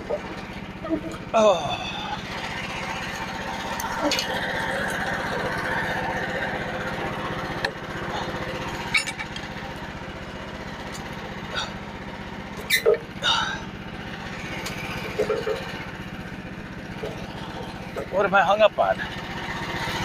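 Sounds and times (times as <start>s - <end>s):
engine running steadily: 0.0s - 20.0s.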